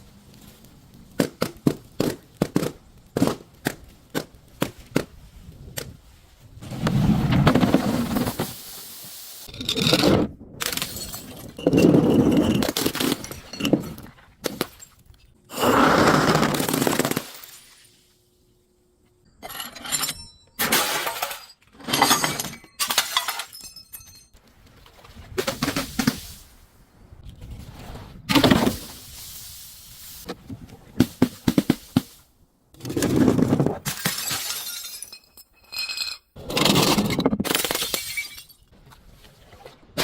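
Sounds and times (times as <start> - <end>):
glass bottles smashing: 10.7 - 14.0, 19.4 - 24.4, 33.8 - 38.7.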